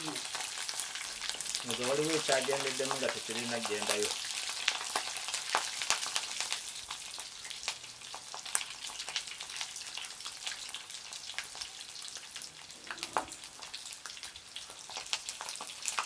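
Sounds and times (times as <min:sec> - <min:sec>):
oil sizzling while deep-frying: 0:00.0 - 0:16.0.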